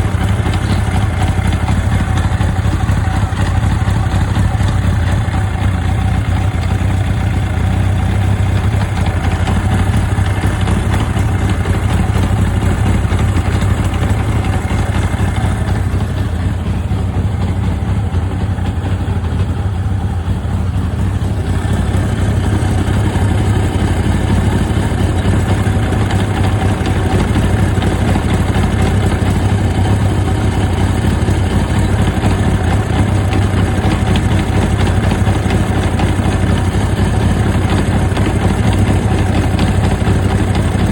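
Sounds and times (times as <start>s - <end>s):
motorcycle engine idling: 0.0s - 40.9s.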